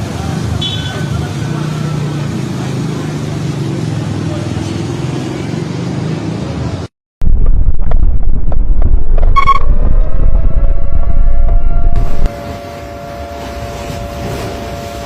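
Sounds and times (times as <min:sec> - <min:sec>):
low hum: 0:07.2 - 0:15.0
high beep: 0:09.2 - 0:09.8.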